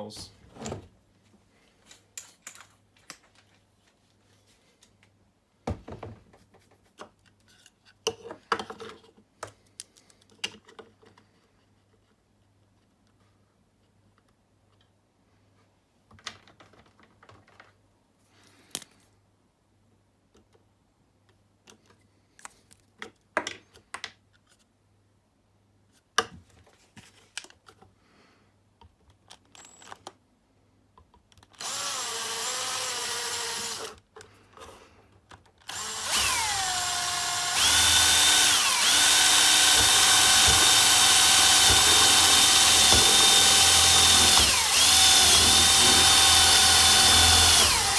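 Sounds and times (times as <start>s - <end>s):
power drill whine: 31.6s - 33.9s, 35.7s - 47.9s.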